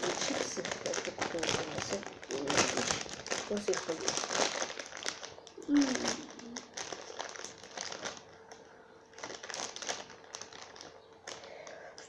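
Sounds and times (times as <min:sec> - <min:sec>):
faint steady hum: 0:00.0 - 0:12.0
plastic bag crinkling: 0:00.0 - 0:12.0.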